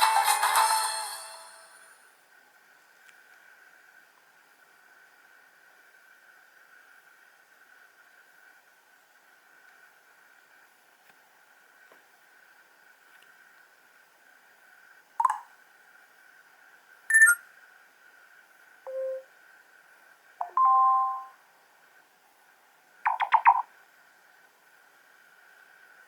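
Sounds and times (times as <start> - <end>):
faint steady whine: 0.0 - 26.0
phone beeps and chimes: 18.9 - 19.3, 20.4 - 21.4.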